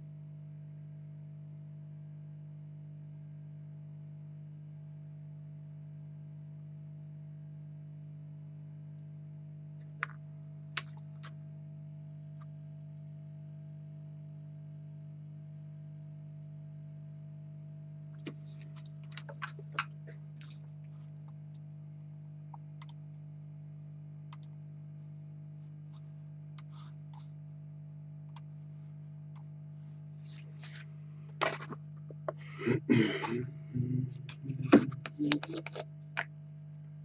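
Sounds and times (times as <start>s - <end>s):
steady low hum: 16.3s - 37.0s.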